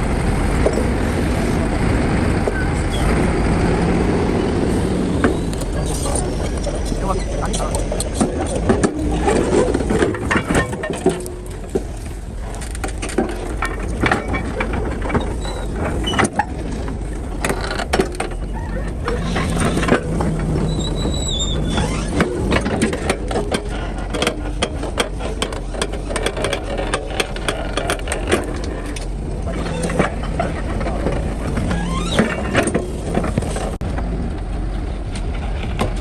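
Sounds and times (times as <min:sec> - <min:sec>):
high squeal: 0:00.0 - 0:24.6
metal clanks and knocks: 0:00.0 - 0:33.8
excavator engine running: 0:00.0 - 0:36.0.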